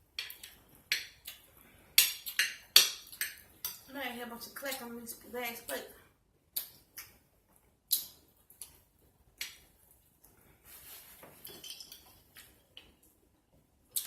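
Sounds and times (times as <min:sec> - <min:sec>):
utensils clinking on a plate: 0:11.4 - 0:12.6.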